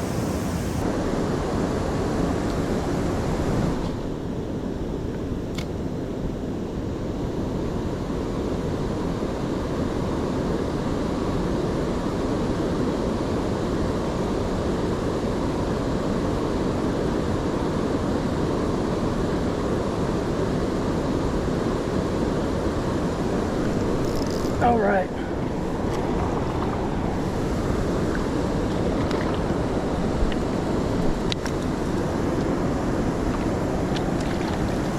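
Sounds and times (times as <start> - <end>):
water rushing over dam: 21.3 - 34.9.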